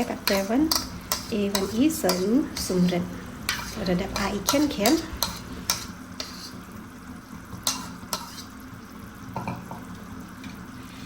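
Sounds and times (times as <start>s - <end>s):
utensil clinking against pan: 0.0s - 2.8s, 3.5s - 6.4s
food sizzling in a pan: 0.0s - 11.0s.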